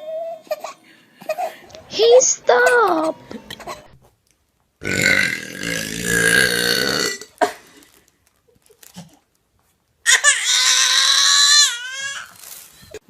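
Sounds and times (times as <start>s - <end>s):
person burping: 4.8s - 7.6s.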